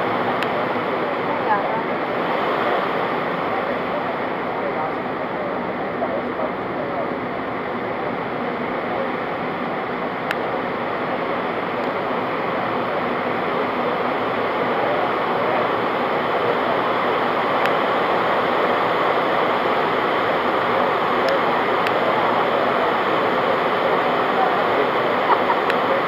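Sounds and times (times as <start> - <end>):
airliner cabin engine roar: 0.0 - 26.0.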